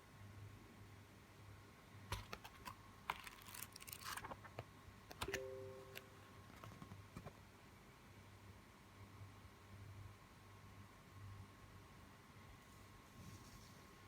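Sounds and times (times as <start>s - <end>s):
packaging rustling: 2.2s - 4.6s
faint tone: 5.3s - 6.3s.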